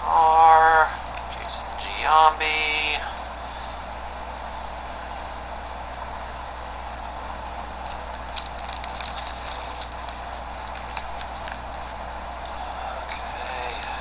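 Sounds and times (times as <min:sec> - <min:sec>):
cards clicking and rustling: 0:07.8 - 0:12.0, 0:13.1 - 0:14.0.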